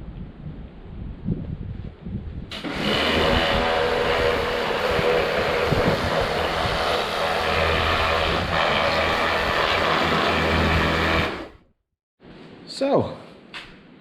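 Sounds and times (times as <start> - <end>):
pressure washer motor humming: 2.5 - 11.6.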